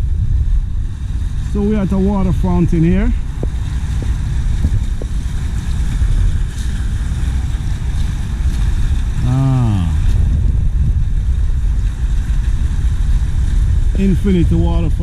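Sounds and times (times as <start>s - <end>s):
water fountain rushing: 0.0s - 15.0s
wind buffeting microphone: 0.0s - 15.0s
short voice sound: 9.2s - 10.2s.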